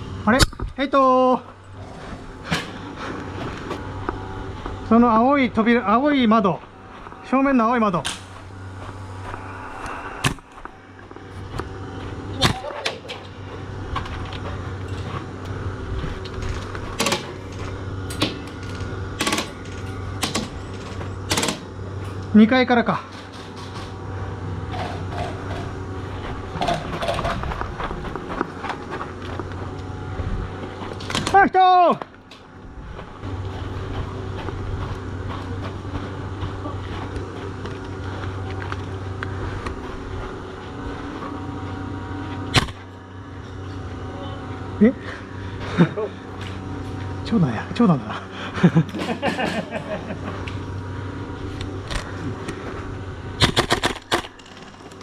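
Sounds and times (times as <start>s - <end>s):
low steady hum: 0.0s - 55.0s
airsoft guns firing: 53.4s - 54.3s.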